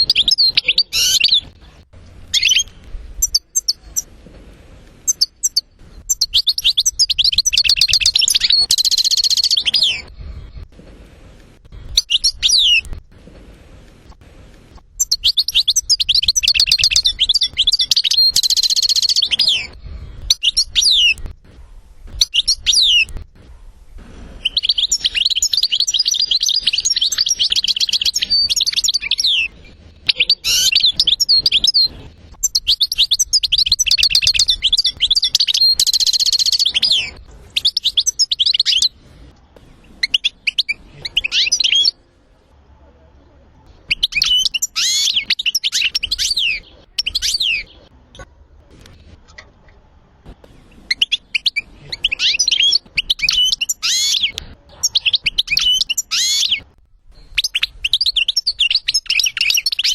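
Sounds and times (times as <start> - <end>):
goldfinch song: 0.0 - 4.1, 5.0 - 10.2, 11.9 - 13.0, 15.0 - 21.3, 22.1 - 23.2, 24.4 - 39.0, 43.8 - 47.9, 50.8 - 59.9.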